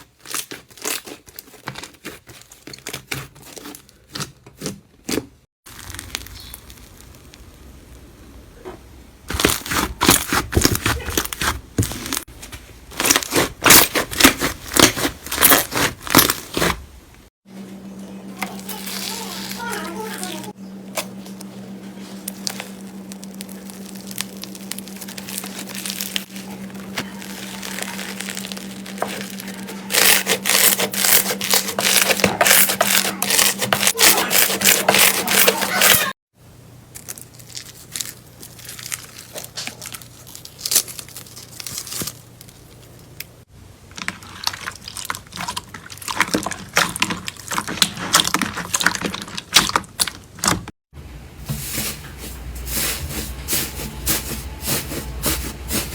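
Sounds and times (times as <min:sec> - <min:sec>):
slime crackling and popping: 0:05.7 - 0:08.0, 0:22.3 - 0:36.0, 0:36.9 - 0:42.8
slime rubbing by hand: 0:22.0 - 0:36.1, 0:51.5 - 0:55.9.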